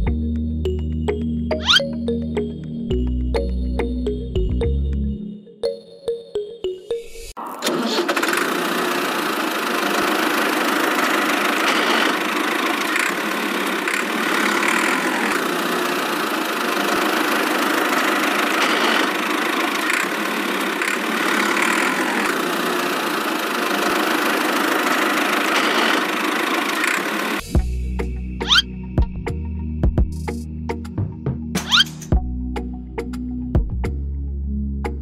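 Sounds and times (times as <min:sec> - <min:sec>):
engine idling: 0:07.6 - 0:27.6.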